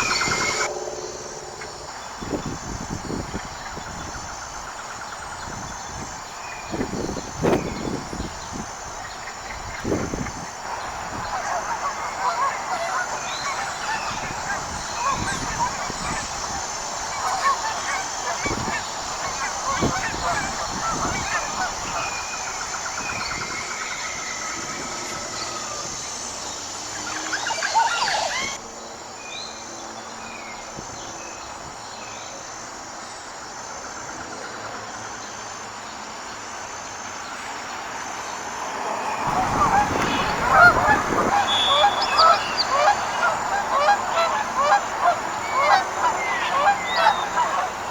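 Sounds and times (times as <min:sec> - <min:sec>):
geese honking: 0:00.0 - 0:28.6, 0:38.6 - 0:47.9.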